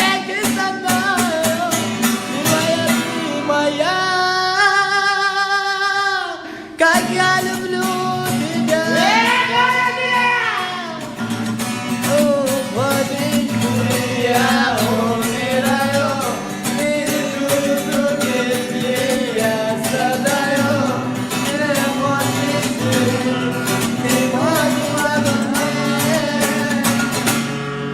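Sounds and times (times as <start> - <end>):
strummed guitar: 0.0 - 27.9.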